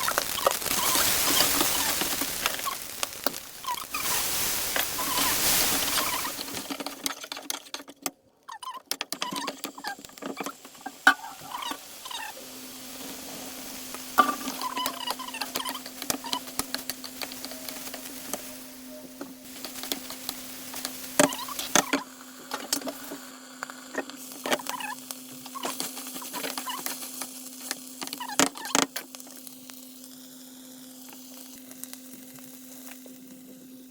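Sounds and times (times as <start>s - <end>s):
utensil stirring and scraping pan: 0.0s - 8.0s, 8.7s - 23.3s
small squeaks: 0.0s - 12.4s, 14.2s - 23.2s, 23.9s - 29.0s
clicks and taps: 6.8s - 10.6s.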